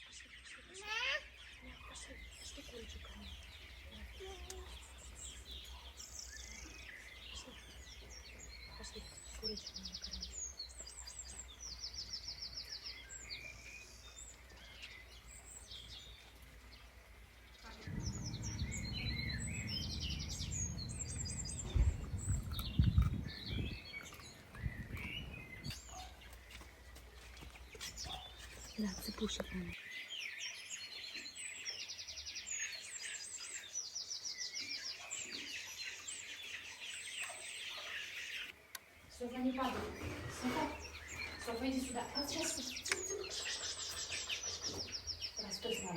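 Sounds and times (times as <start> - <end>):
birds chirping: 0.0 - 45.9
low rumble: 17.6 - 25.8
bird trill: 17.6 - 26.6, 39.2 - 45.9
chicks peeping: 17.7 - 26.7, 39.3 - 45.9.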